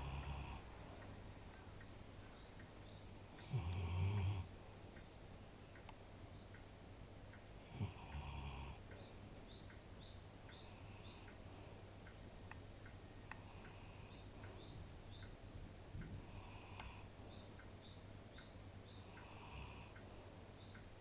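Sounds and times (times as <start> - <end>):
dog snoring: 3.4 - 4.5, 7.6 - 8.8.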